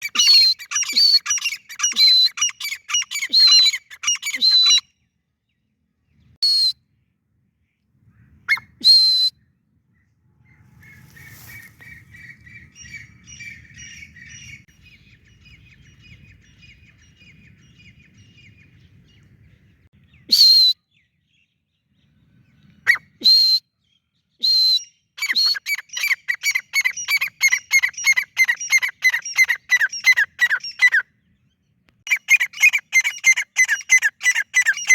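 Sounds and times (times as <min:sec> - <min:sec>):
soft bird chirping: 0:09.4 - 0:20.3.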